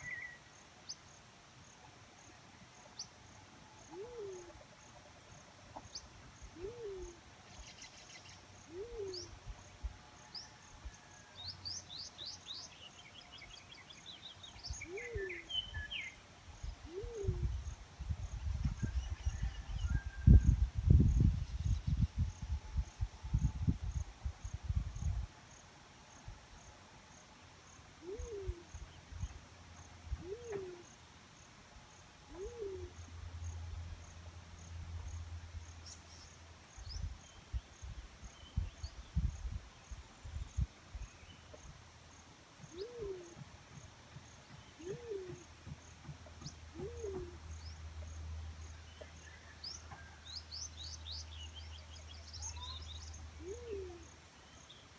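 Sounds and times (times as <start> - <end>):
fruit dove hooting: 3.9 - 4.6, 6.5 - 7.2, 8.7 - 9.4, 14.8 - 15.9, 16.8 - 17.6, 28.0 - 28.8, 30.1 - 30.9, 32.3 - 33.0, 42.7 - 43.4, 44.7 - 45.6, 46.7 - 47.5, 53.4 - 54.2.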